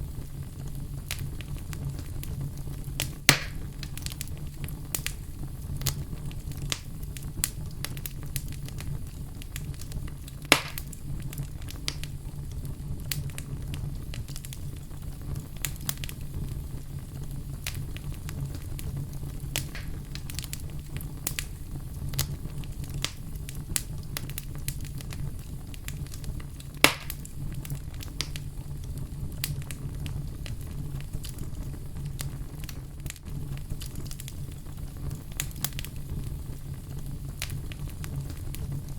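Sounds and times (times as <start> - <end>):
loud fire pops: 0.0 - 38.9
low steady rumble: 0.0 - 38.9
wood fire crackling: 0.0 - 38.9.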